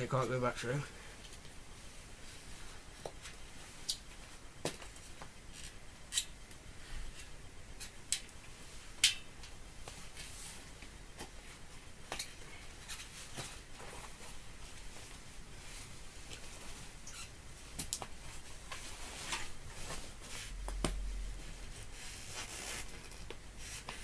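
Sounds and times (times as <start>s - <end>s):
soft rubbing: 13.0s - 24.0s.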